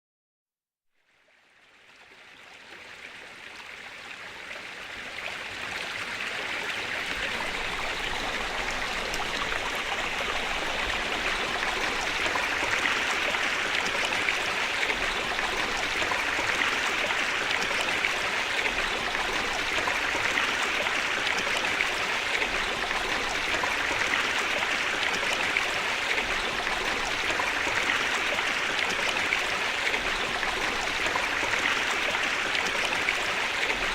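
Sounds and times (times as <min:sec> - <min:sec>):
waterfall rushing: 0:07.0 - 0:23.5.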